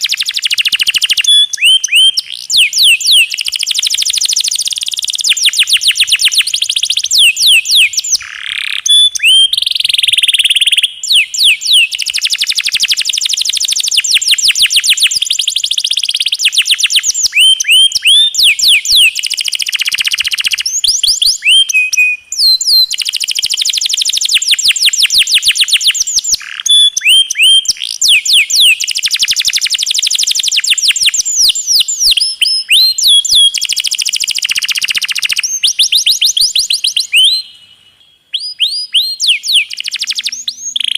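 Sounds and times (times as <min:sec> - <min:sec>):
canary singing trills: 0:00.0 - 0:40.9.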